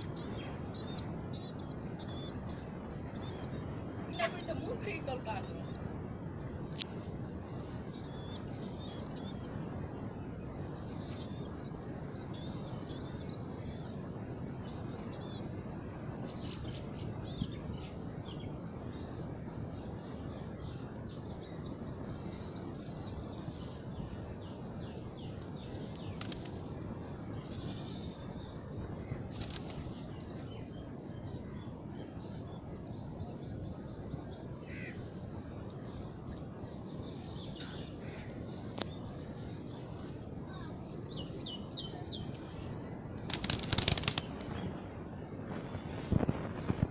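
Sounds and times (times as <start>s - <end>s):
small birds chirping: 0.0s - 5.9s, 6.7s - 46.9s
outdoor background rumble: 0.0s - 46.9s
pigeon wings flapping: 26.0s - 26.7s, 29.3s - 30.0s, 43.2s - 44.6s.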